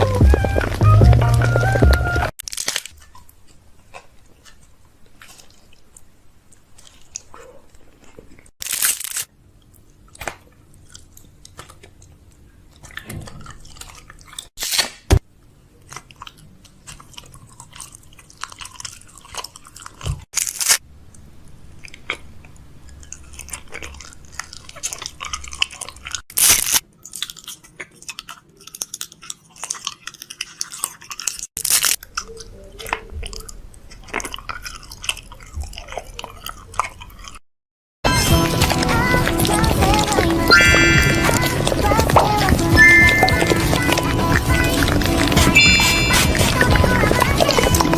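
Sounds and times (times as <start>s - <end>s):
crisp chewing crunches: 0.0s - 37.4s, 38.1s - 47.9s
loud sharp bites: 20.1s - 20.8s, 26.3s - 26.8s.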